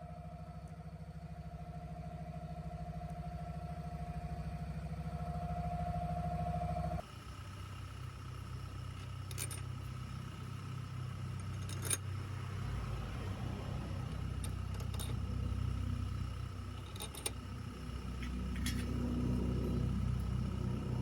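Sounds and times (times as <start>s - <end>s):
low mechanical hum: 0.0s - 21.0s
metal tools clinking: 9.0s - 9.9s, 11.3s - 12.0s, 14.1s - 15.2s, 16.7s - 17.5s, 18.2s - 19.0s.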